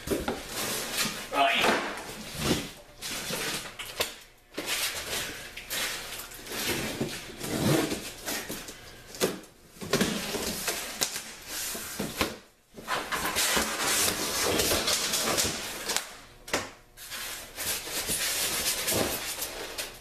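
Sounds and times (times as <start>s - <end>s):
cardboard scraping and rubbing: 6.5s - 8.5s.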